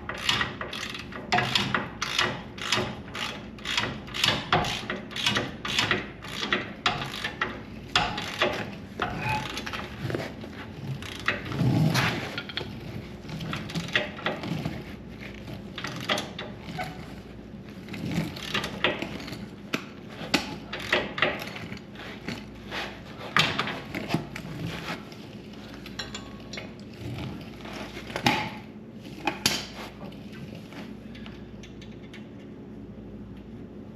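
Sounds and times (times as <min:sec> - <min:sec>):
wrench clanking on metal parts: 0:00.0 - 0:10.2, 0:20.3 - 0:22.4, 0:25.8 - 0:27.0.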